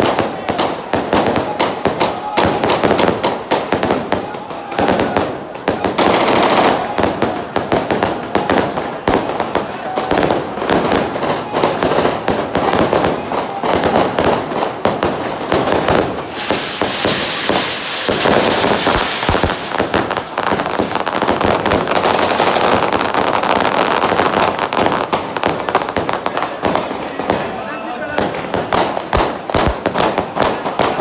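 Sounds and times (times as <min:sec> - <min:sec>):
firecrackers crackling: 0:00.0 - 0:27.6, 0:28.2 - 0:31.0
loud hissing rush: 0:15.7 - 0:22.0.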